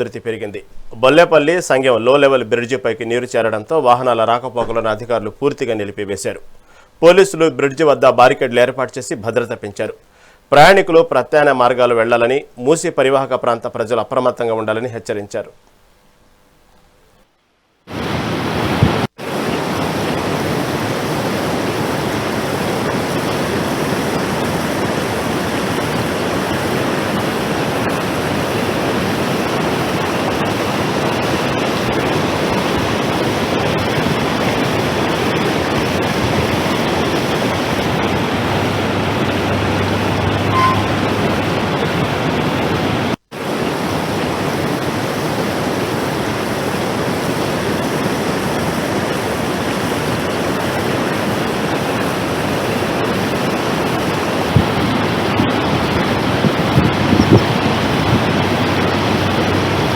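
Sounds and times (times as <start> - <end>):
floodwater rushing: 17.9 - 59.9.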